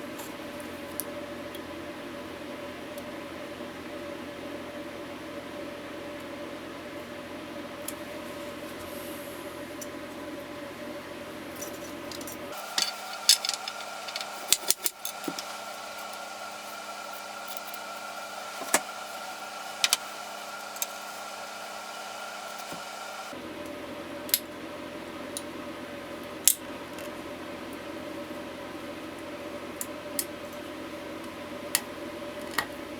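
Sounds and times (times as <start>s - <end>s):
steady hum: 8.0s - 25.0s
small hard parts clicking: 12.1s - 16.3s.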